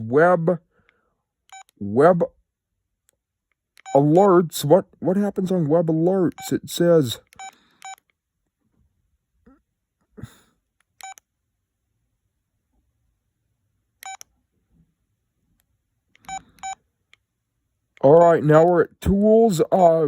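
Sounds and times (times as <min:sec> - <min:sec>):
phone keypad beeps: 0:01.5 - 0:01.8, 0:07.3 - 0:08.1, 0:11.0 - 0:11.2, 0:14.0 - 0:14.3, 0:16.2 - 0:16.8.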